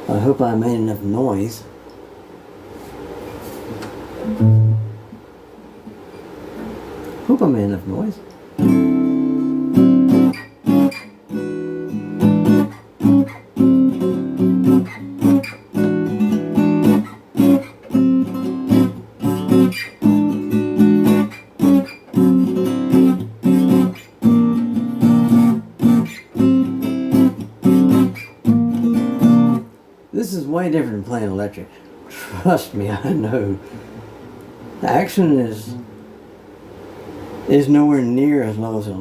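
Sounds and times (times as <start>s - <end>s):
acoustic guitar strumming: 4.1s - 6.9s, 8.6s - 29.8s.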